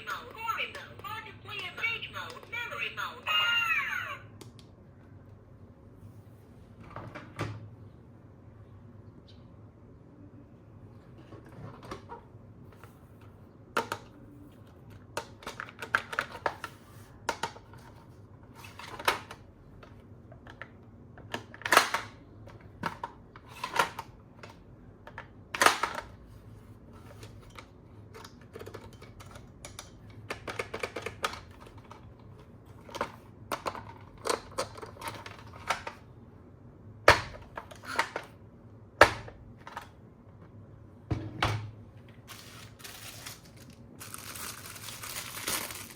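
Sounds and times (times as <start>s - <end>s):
plastic toys clicking and knocking: 15.0s - 18.0s, 18.8s - 26.1s, 27.1s - 32.1s, 32.8s - 36.0s.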